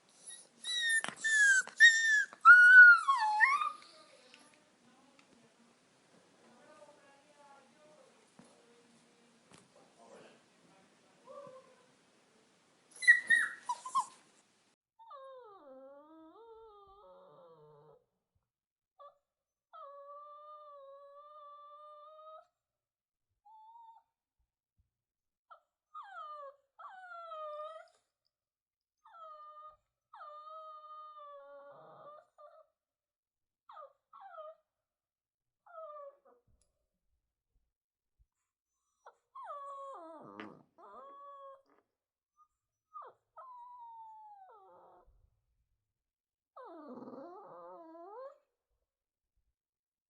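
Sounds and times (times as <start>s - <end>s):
puppy whining: 0.1s - 4.4s, 12.9s - 14.4s, 15.0s - 18.0s, 19.0s - 22.5s, 25.5s - 28.1s, 29.0s - 32.7s, 33.7s - 34.6s, 35.6s - 36.5s, 38.8s - 41.8s, 42.4s - 45.3s, 46.6s - 48.5s
puppy yelp: 0.2s - 3.9s, 12.9s - 14.2s.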